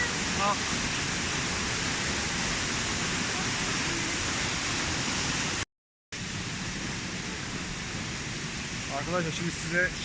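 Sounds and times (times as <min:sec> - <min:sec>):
waterfall roaring: 0:00.0 - 0:05.6, 0:06.2 - 0:10.0.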